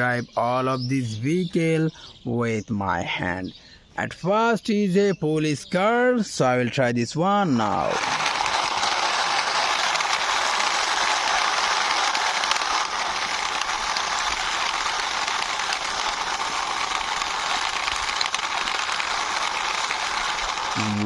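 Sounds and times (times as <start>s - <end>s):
toy car wheels rolling: 7.5s - 21.0s.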